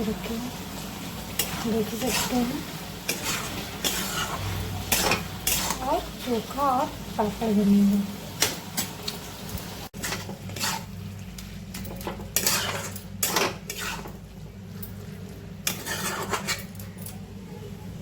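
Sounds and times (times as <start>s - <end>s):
metal spoon scraping a pan: 1.3s - 6.2s, 10.0s - 11.0s, 11.8s - 14.2s, 15.6s - 17.0s.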